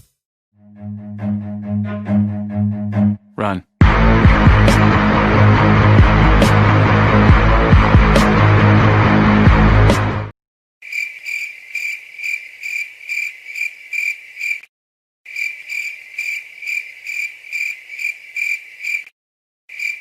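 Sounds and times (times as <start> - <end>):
cricket chirping: 10.8 - 14.7, 15.3 - 19.1, 19.7 - 20.0.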